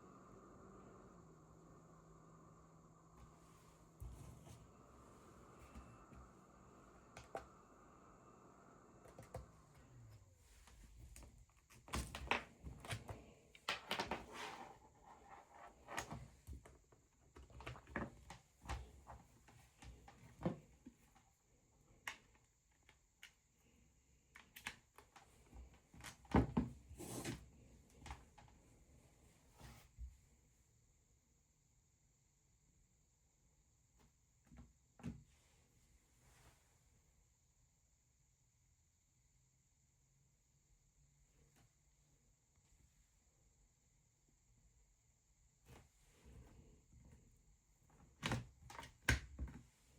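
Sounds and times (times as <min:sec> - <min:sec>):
small machine humming: 0:00.0 - 0:10.5.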